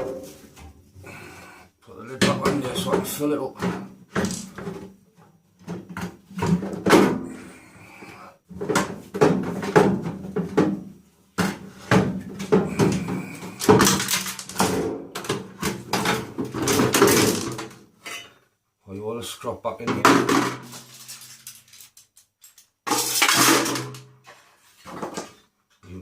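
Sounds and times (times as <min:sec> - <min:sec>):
scrap metal parts clanking: 0:12.6 - 0:14.8, 0:15.9 - 0:18.4, 0:20.4 - 0:25.4.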